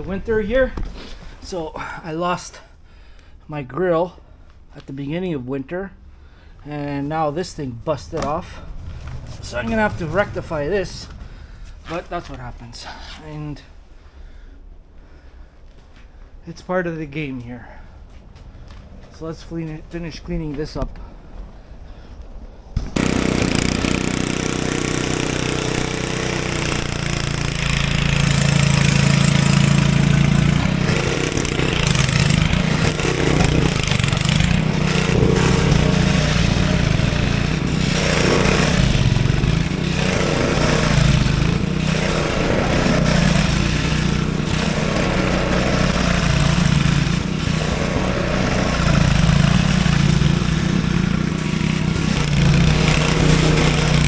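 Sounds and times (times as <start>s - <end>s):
snowblower engine running: 7.2s - 13.0s, 22.8s - 54.0s.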